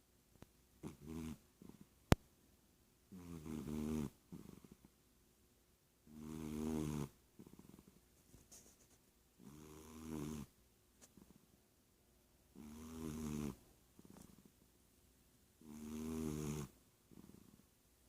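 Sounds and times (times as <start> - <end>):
cat snoring: 0.8 - 1.9, 3.1 - 4.9, 6.0 - 8.0, 9.4 - 10.5, 12.5 - 14.5, 15.6 - 17.6.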